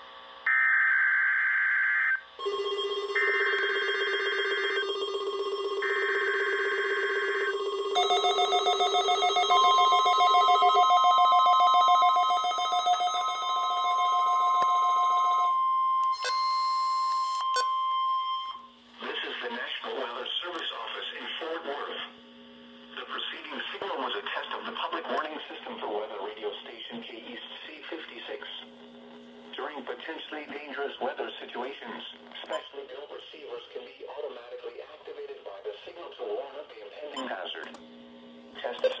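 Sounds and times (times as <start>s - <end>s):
steady warning alarm tone: 0.5s - 18.7s
pulsing electronic alert tone: 2.4s - 17.8s.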